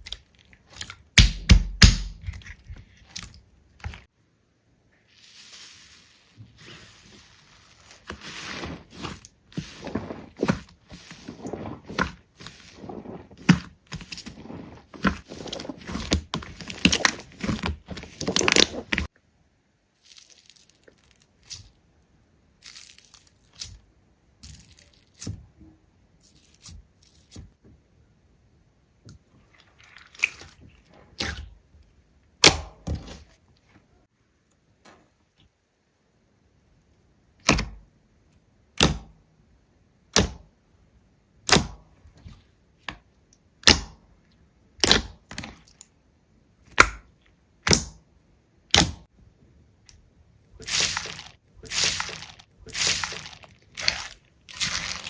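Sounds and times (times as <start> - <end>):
slime crackling and popping: 50.6 - 55.0.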